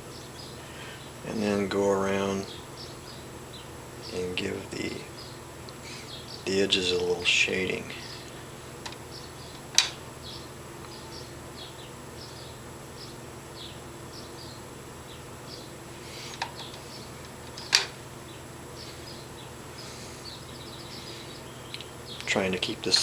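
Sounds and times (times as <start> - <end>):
steady low hum: 0.0 - 23.0
sharp clicks: 21.7 - 22.3.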